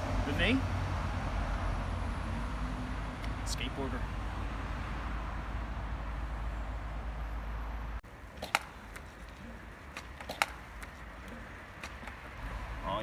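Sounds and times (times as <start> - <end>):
sharp clacks: 8.4 - 9.2, 9.9 - 12.2.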